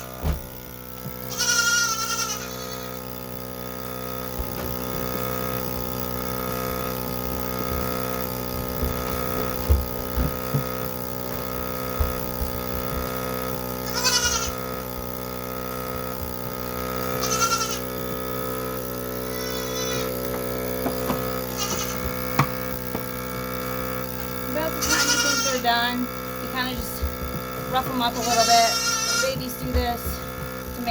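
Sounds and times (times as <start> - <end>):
vacuum pump humming: 0.0 - 30.9
goats bleating: 1.2 - 3.0, 13.8 - 14.7, 17.0 - 17.9, 19.2 - 20.2, 21.5 - 22.2, 24.6 - 26.0, 27.8 - 30.9.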